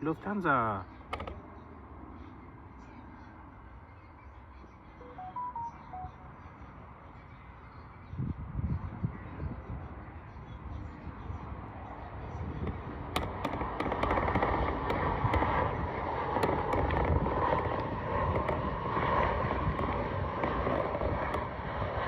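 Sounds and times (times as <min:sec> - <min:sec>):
jet airliner roar overhead: 0:00.0 - 0:22.0
crackle of sharp ticks: 0:13.2 - 0:15.6.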